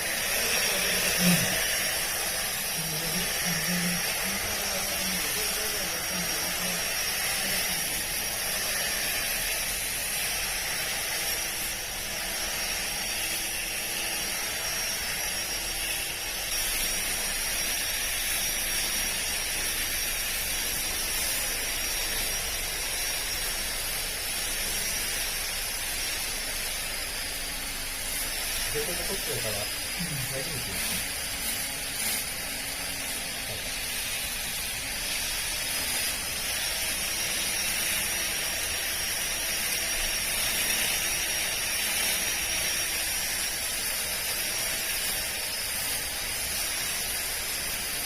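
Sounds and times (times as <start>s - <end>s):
grass trimmer motor whining: 0.0s - 48.0s
trimmer line cutting grass: 0.0s - 48.0s.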